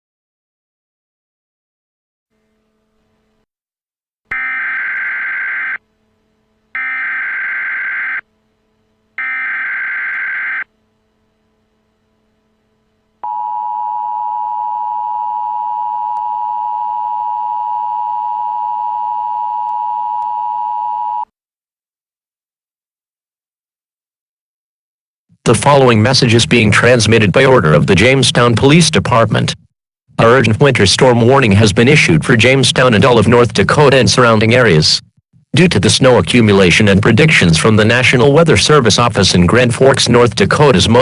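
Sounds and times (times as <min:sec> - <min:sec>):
two-tone attention signal: 0:04.3 - 0:05.8, 0:06.8 - 0:08.2, 0:09.2 - 0:10.6
digital data bursts: 0:06.8 - 0:08.2.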